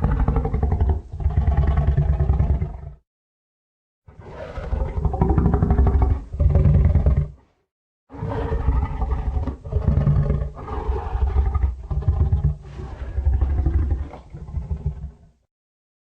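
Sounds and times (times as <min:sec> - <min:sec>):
giant gorilla roar: 0:04.2 - 0:07.4, 0:08.1 - 0:15.2.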